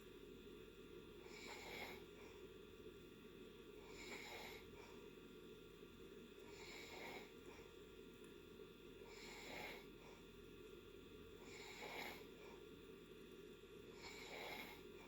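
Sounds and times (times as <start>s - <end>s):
low background hiss: 0.0s - 15.0s
person snoring faintly: 1.2s - 2.4s, 3.8s - 5.0s, 6.5s - 7.7s, 9.0s - 10.2s, 11.4s - 12.6s, 13.9s - 15.0s.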